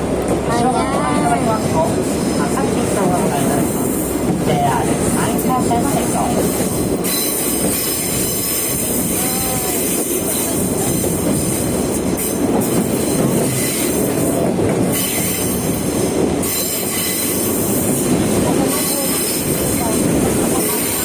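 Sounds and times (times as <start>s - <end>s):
train wheels rolling on rails: 0.0s - 21.0s.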